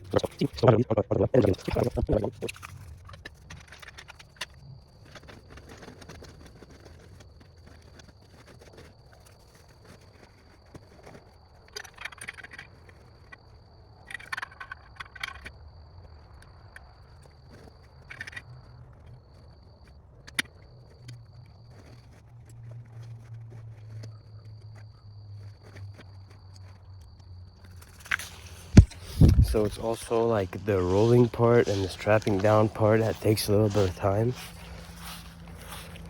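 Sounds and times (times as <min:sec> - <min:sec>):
fabric rustling and scraping: 0:27.7 - 0:36.0.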